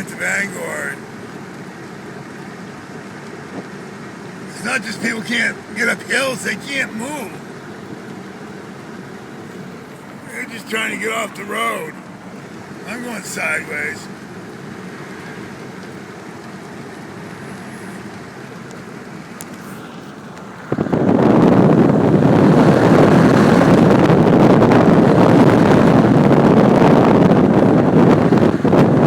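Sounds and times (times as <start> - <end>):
road and engine rumble: 0.0 - 29.0
loud rough rushing noise: 4.3 - 20.0.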